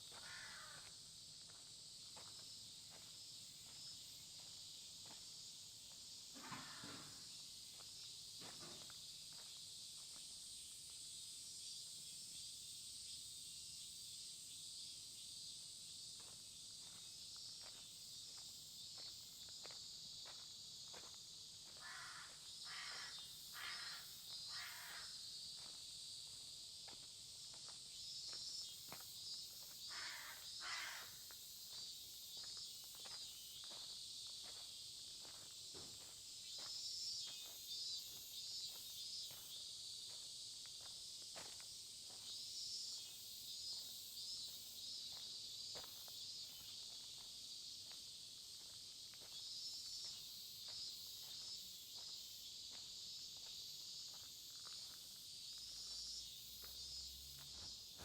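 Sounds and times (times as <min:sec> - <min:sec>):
insects chirring: 0:00.0 - 0:58.0
crows cawing: 0:00.1 - 0:00.9, 0:06.4 - 0:07.2, 0:21.8 - 0:25.2, 0:29.9 - 0:31.3
footsteps: 0:32.4 - 0:36.7.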